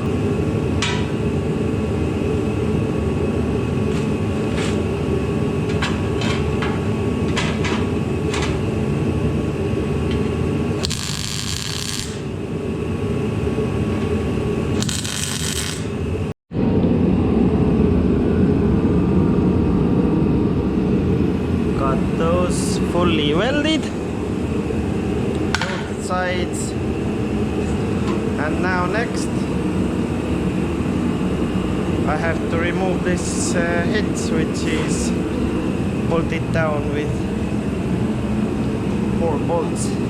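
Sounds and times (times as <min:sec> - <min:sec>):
heater drone: 0:00.0 - 0:40.0
welding crackling hiss: 0:10.8 - 0:12.4, 0:14.7 - 0:16.0.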